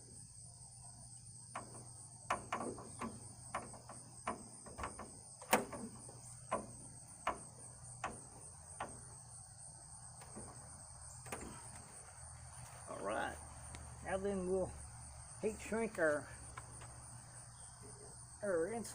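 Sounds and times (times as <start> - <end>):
crickets chirring: 0.0 - 18.9
handling clicks and knocks: 1.4 - 9.4, 10.0 - 12.8.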